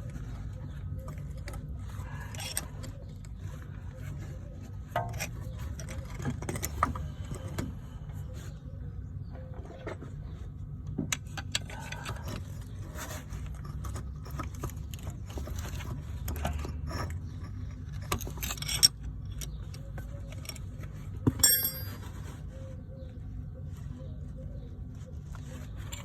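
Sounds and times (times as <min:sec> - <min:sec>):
metal tools clinking and scraping: 0:13.6 - 0:22.4.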